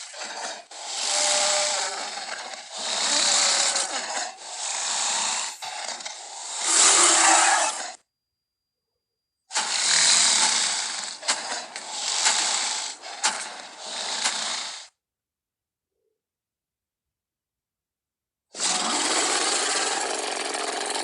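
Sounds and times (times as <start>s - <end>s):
creature growling and roaring: 0.0s - 8.0s, 18.6s - 21.0s
sharp snorts: 0.0s - 8.0s, 9.5s - 15.0s, 18.6s - 21.0s.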